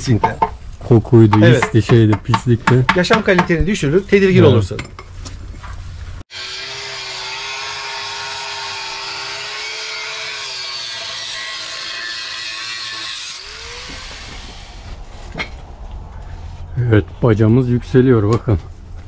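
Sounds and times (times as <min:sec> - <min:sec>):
power tool whining: 0:10.8 - 0:15.0.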